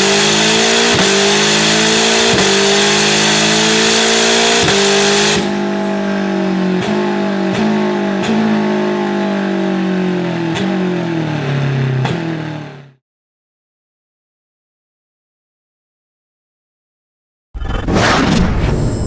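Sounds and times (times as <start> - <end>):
race car engine revving: 0.0 - 13.0.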